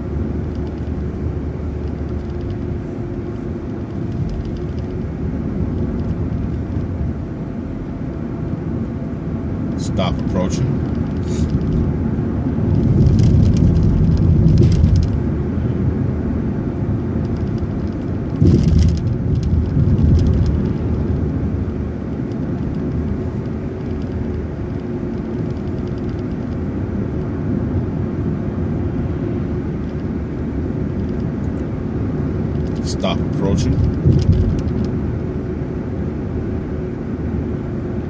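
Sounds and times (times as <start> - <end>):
bus engine and road rumble: 0.0 - 38.0.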